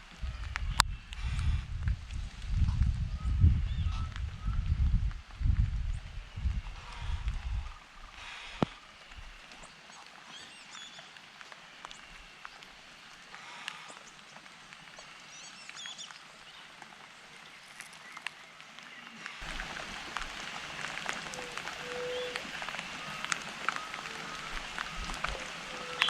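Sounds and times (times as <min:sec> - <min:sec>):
steady hiss: 0:04.2 - 0:26.0
water dripping: 0:05.0 - 0:26.0
bird chirps and calls: 0:21.2 - 0:26.0.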